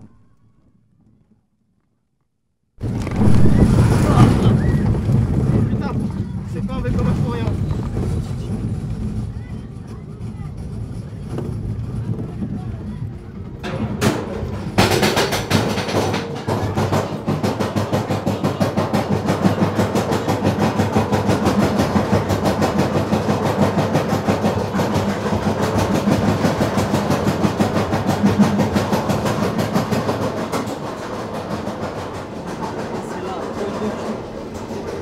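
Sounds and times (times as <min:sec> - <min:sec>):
low hum: 0:02.8 - 0:09.3
roller coaster cars clattering: 0:02.8 - 0:35.0.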